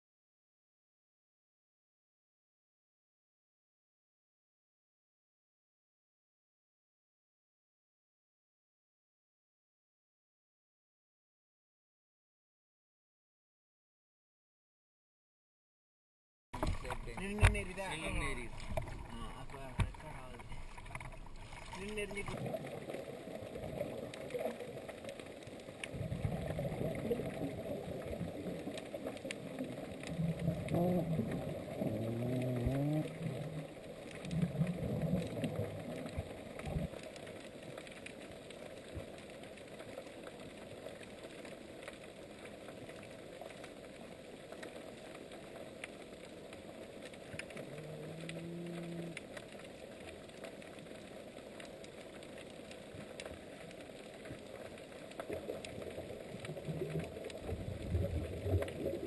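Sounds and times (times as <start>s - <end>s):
faint clicks: 16.6s - 59.0s
low underwater animal calls: 30.0s - 37.0s, 47.4s - 49.5s.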